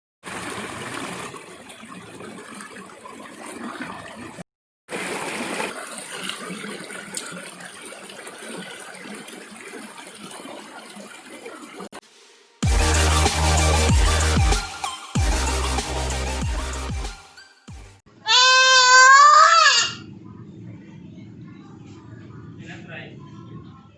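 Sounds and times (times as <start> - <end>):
water trickling and gurgling: 0.3 - 12.0.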